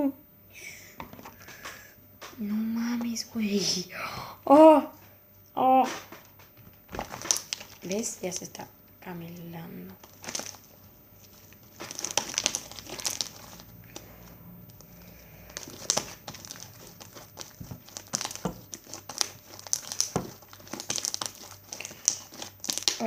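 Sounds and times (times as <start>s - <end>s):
slime crackling and squishing: 6.9s - 8.6s, 9.8s - 23.0s.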